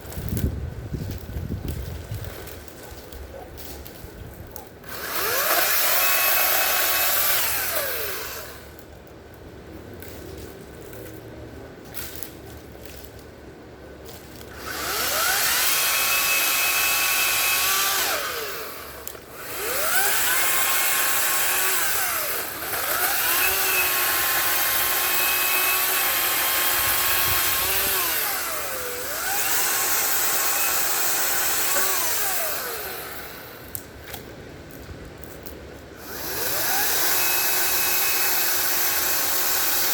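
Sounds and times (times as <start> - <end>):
battery chainsaw whining while cutting: 4.8 - 8.7, 14.5 - 33.8, 36.0 - 39.9.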